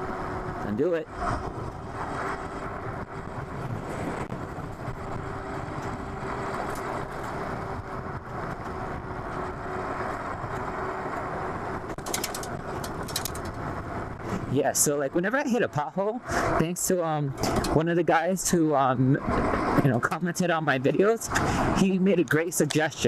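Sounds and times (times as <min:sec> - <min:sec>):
rushing wind: 0:00.0 - 0:23.0
tyre noise on road: 0:00.0 - 0:23.0.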